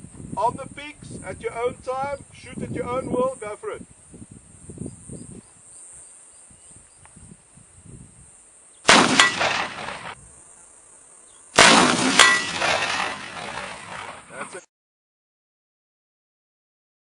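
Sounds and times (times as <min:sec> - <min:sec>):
sharp metallic ping: 0:08.9 - 0:09.9, 0:11.6 - 0:13.2
gunshots with echoing tail: 0:08.9 - 0:10.2, 0:11.6 - 0:14.2.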